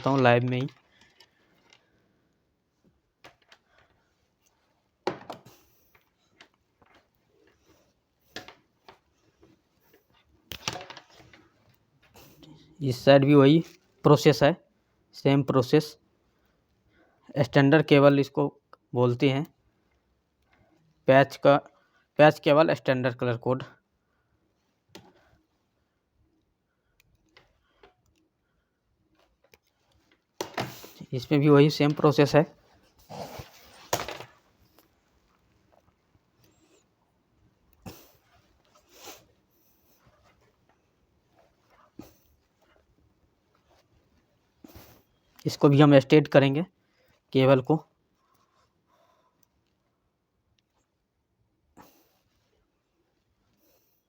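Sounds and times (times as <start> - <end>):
faint clicks and taps: 0.0 - 2.0
cable handling clicks and rustles: 0.0 - 14.4, 24.4 - 46.0.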